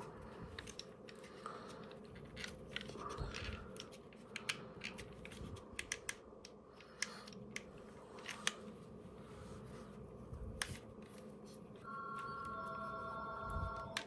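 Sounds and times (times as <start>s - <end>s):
light clicks and snips: 0.0s - 8.7s.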